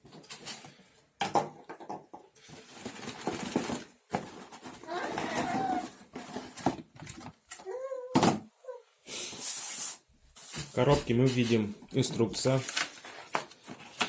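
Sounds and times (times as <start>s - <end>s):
plastic box rustling: 2.4s - 7.6s, 10.4s - 14.0s.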